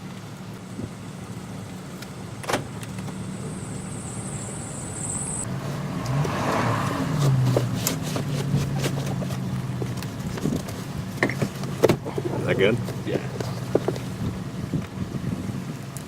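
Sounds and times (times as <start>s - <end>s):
car engine running: 0.0s - 16.0s
high thin whine: 2.8s - 6.2s.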